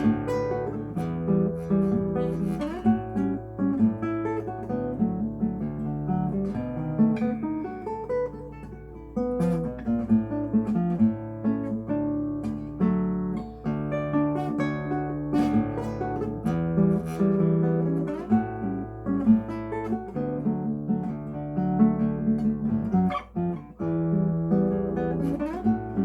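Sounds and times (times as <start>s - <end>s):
solo classical guitar: 0.0s - 26.0s.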